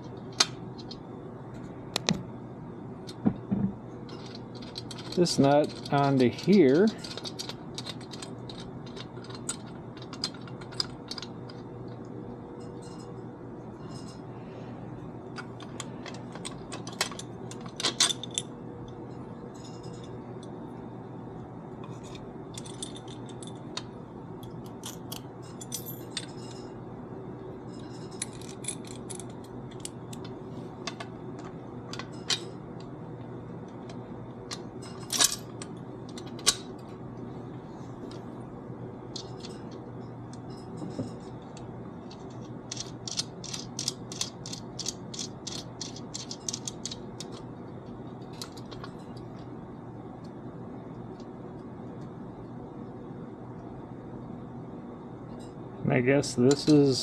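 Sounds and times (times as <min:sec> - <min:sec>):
low background hum: 0:00.0 - 0:57.0
metal hardware clinking: 0:04.1 - 0:11.7, 0:21.8 - 0:26.7, 0:27.8 - 0:32.6, 0:33.7 - 0:36.7.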